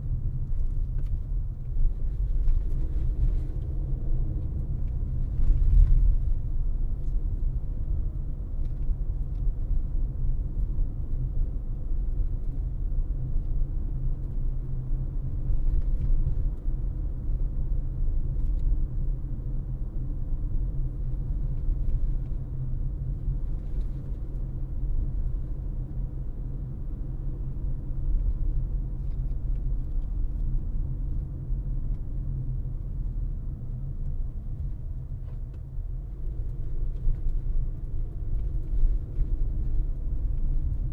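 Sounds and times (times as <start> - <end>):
car road rumble: 0.0 - 40.9.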